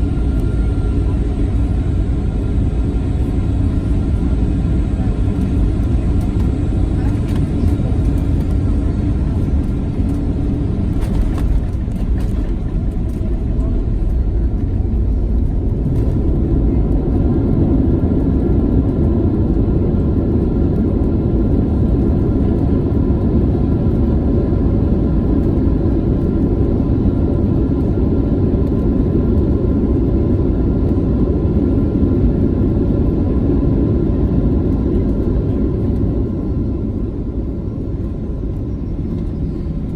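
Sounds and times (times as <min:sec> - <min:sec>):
airplane cabin engine rumble: 0:00.0 - 0:39.9
faint engine tones: 0:34.1 - 0:39.9.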